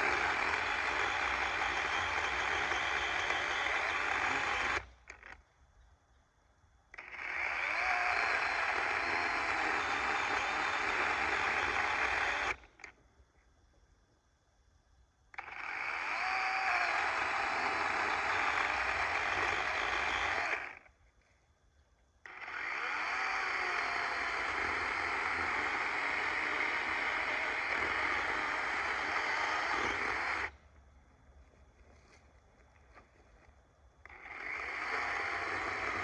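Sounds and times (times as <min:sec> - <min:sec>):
chainsaw cutting wood: 0:00.0 - 0:05.4, 0:07.0 - 0:12.9, 0:15.4 - 0:20.9, 0:22.3 - 0:30.5, 0:34.1 - 0:36.0.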